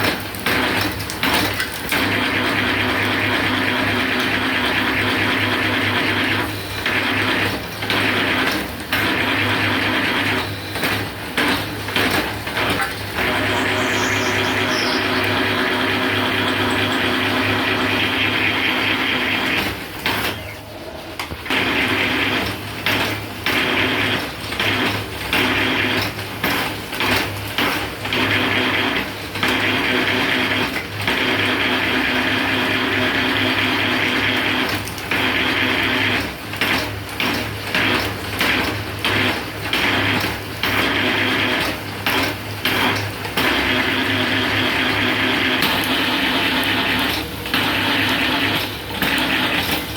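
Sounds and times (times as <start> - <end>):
machine motor hum: 0.0 - 24.8, 43.5 - 49.9.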